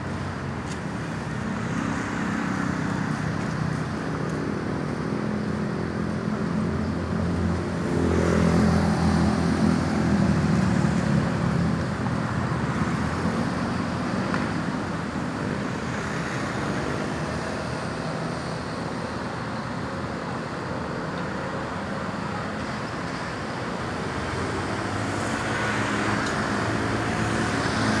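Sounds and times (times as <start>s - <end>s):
vehicles passing: 0.0s - 28.0s
vehicle engines running: 21.6s - 28.0s.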